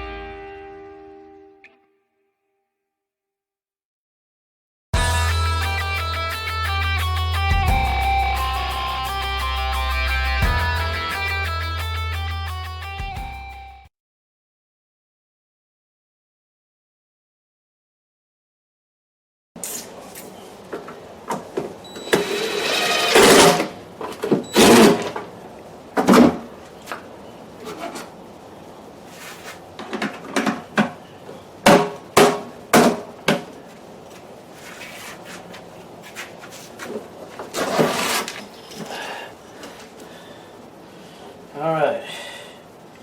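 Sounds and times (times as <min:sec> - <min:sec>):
plastic scraping rustles: 0:34.1 - 0:39.0.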